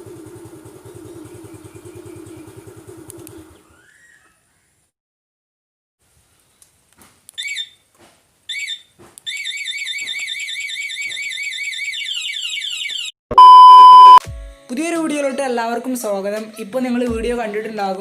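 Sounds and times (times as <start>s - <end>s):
alarm chirps: 12.4s - 14.2s
loud steady beep: 13.3s - 14.2s.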